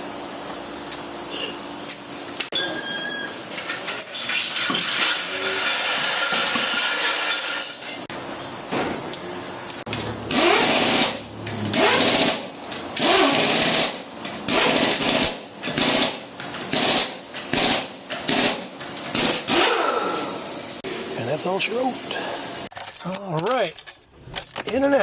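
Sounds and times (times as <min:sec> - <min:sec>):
pneumatic impact wrench bursts: 0:02.4 - 0:08.0, 0:08.7 - 0:20.8.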